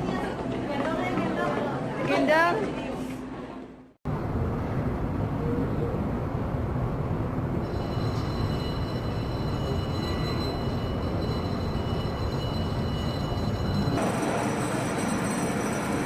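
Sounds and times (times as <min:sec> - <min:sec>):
train rumbling: 0:04.1 - 0:16.0.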